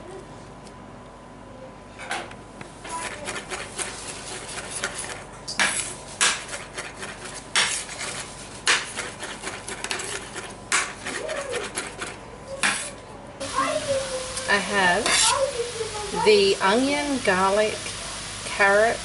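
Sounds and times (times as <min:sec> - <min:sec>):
kitchen utensils clattering: 0:14.6 - 0:15.6.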